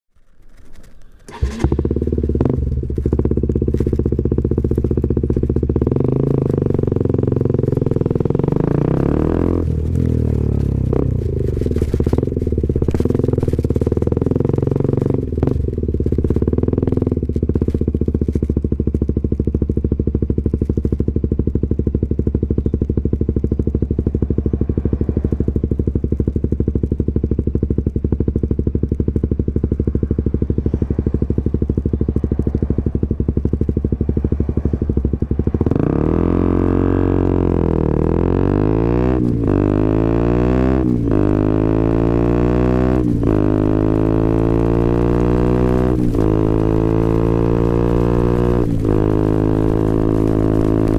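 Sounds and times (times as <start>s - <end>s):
engine clicks: 0.2s - 6.9s
motorcycle engine idling: 0.2s - 40.0s.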